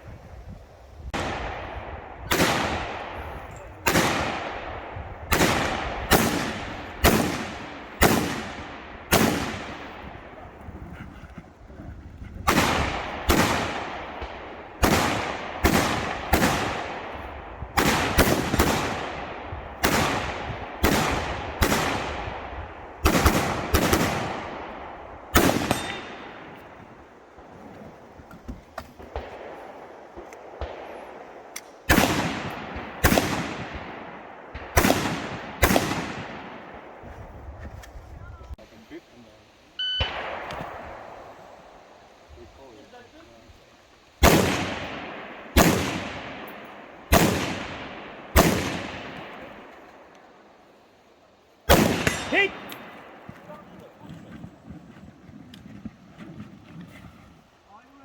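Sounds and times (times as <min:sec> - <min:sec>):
rifle shots echoing: 0:01.1 - 0:10.7, 0:12.4 - 0:27.6, 0:29.0 - 0:37.0, 0:40.0 - 0:42.2, 0:44.2 - 0:54.2.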